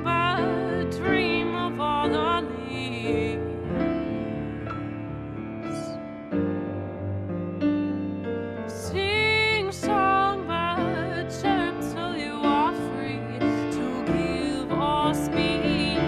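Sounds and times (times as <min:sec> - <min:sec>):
woman singing: 0:00.0 - 0:04.7, 0:08.7 - 0:16.0.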